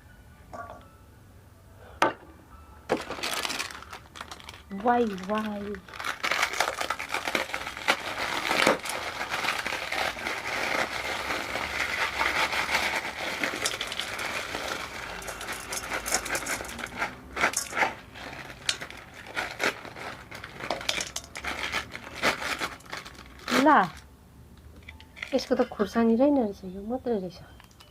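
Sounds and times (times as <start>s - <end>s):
dry noodles crushed: 2.9s - 24.0s
plastic packet crinkling: 2.9s - 24.1s.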